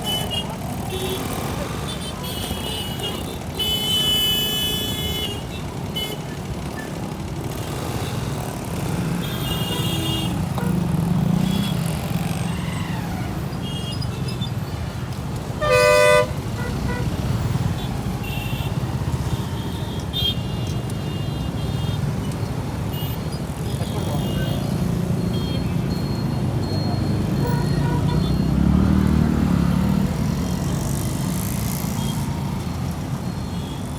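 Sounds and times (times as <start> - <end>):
loud horn blast: 15.6 - 17.2.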